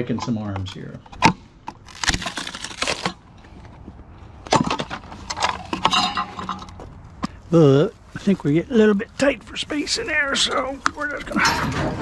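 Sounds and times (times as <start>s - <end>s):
plastic cracking: 1.2s - 3.3s.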